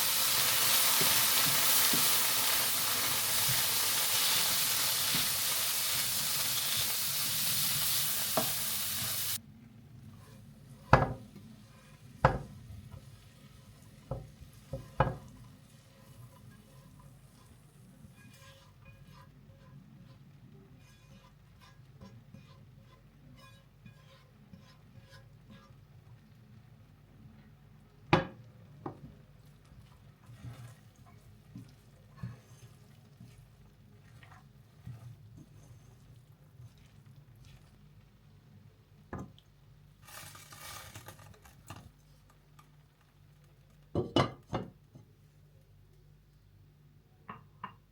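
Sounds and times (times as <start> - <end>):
food sizzling in a hot pan: 0.0 - 9.4
soft knocks of kitchen items: 10.9 - 11.3.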